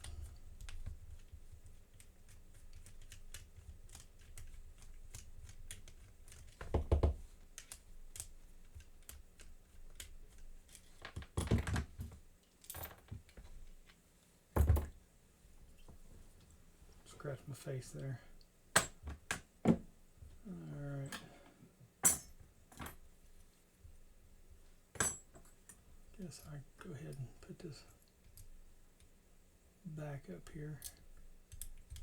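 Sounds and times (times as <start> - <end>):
small metal clicks and taps: 30.8 - 32.0.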